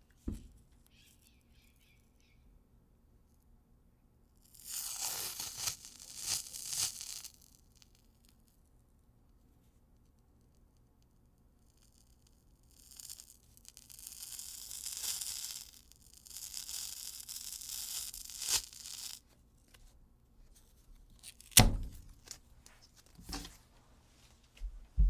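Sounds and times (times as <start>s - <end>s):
tape pulled off roll: 21.1s - 23.7s
tape snapping: 21.2s - 22.4s.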